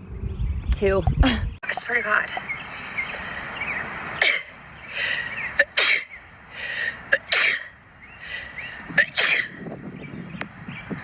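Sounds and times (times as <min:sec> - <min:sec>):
breathy intakes: 0:04.4 - 0:09.6.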